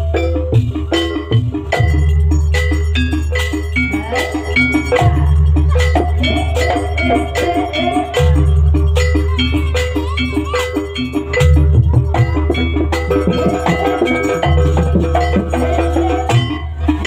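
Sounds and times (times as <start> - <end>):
struck metal percussion: 0.0 - 17.0.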